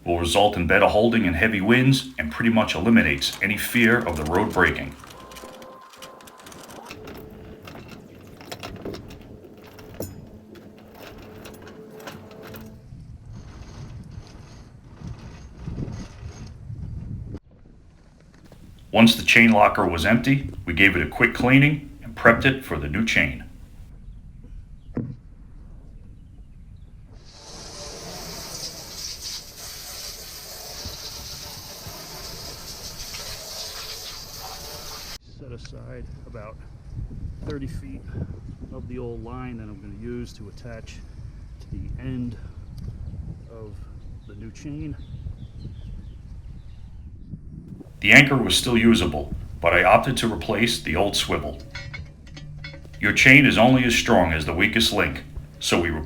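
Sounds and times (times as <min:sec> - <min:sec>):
anchor chain clinking and rattling: 0:00.4 - 0:12.8, 0:18.5 - 0:23.8, 0:47.8 - 0:56.0
spray hissing: 0:27.5 - 0:35.2
faint steady hum: 0:47.8 - 0:52.0.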